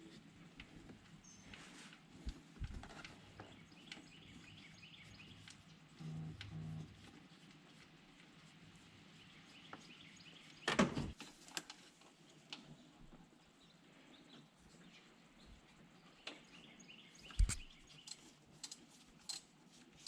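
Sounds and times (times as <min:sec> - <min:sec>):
hand tools clicking on metal parts: 0:17.4 - 0:19.5.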